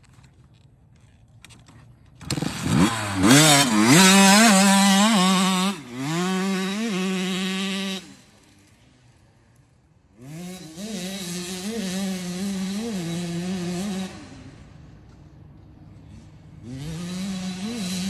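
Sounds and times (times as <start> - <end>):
dirt bike engine revving: 2.2 - 9.2, 10.1 - 14.8, 16.1 - 18.0.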